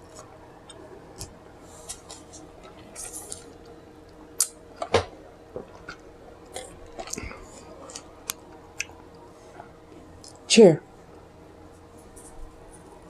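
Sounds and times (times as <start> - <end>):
sharp food cracks: 4.4 - 4.6
chewing and mouth smacking: 5.7 - 9.0.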